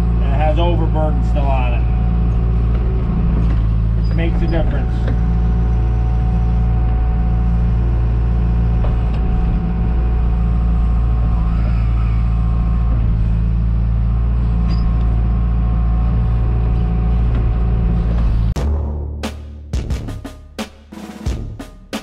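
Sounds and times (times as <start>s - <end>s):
diesel engine running: 0.0s - 20.4s.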